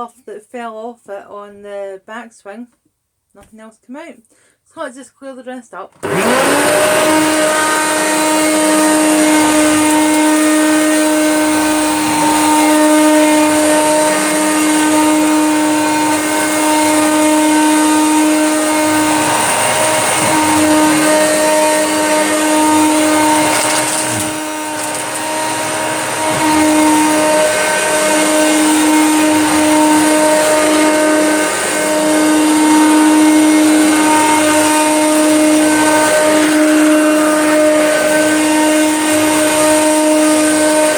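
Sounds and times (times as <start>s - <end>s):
upright vacuum cleaner running: 6.0s - 40.9s.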